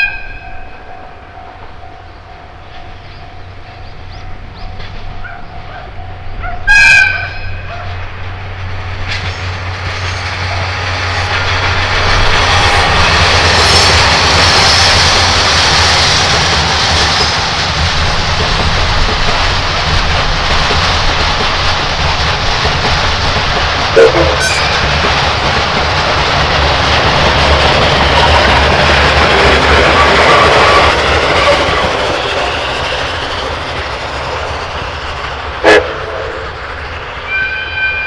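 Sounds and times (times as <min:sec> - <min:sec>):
locomotive engine rumble: 0:00.8 - 0:38.0
train wheel clatter: 0:01.1 - 0:38.0
locomotive horn blast: 0:06.4 - 0:08.0, 0:23.9 - 0:25.0, 0:35.6 - 0:36.4, 0:37.3 - 0:38.0.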